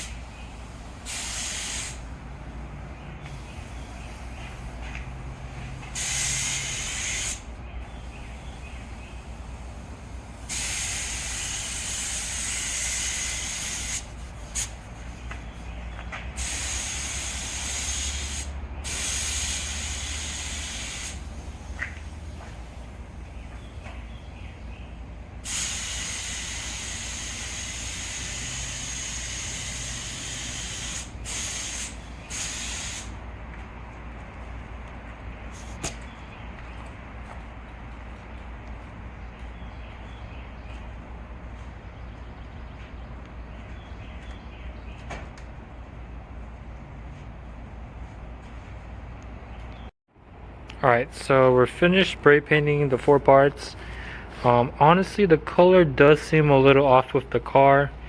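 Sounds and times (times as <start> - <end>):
spray can hissing: 1.0 - 2.0, 5.9 - 7.4, 10.5 - 14.8, 16.4 - 22.2, 25.4 - 33.2.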